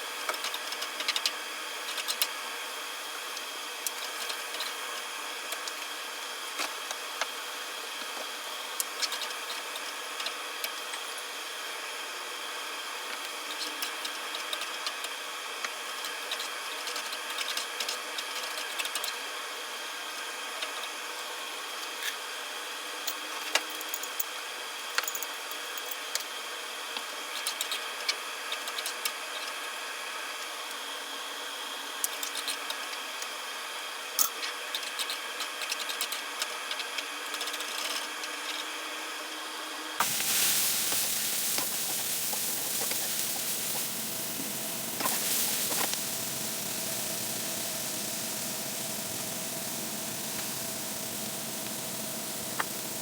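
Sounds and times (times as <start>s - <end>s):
hissing pan: 40.0s - 53.0s.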